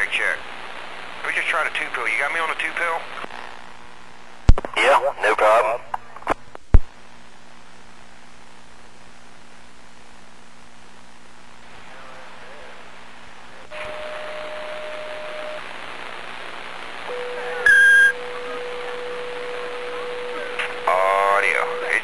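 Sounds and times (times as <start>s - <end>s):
radio static hiss: 0.0s - 22.0s
lower whistle: 17.1s - 18.4s
short loud beep: 17.1s - 18.4s
thin steady whistle tone: 17.1s - 22.0s.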